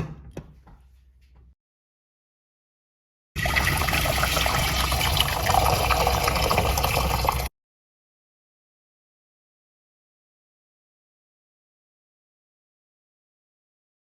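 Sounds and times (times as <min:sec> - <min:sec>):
water pouring: 0:03.4 - 0:07.5.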